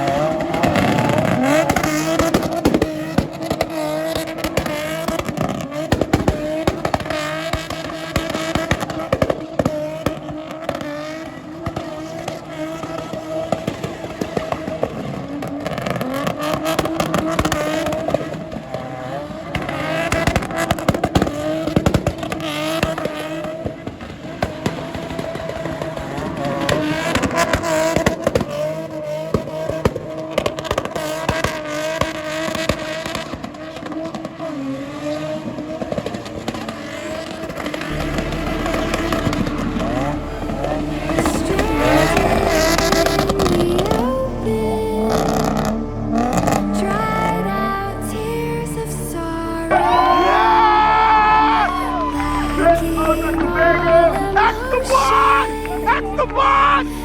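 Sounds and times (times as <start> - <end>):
engine crackling pops: 0.0 - 34.5
car engine running hard: 0.0 - 57.0.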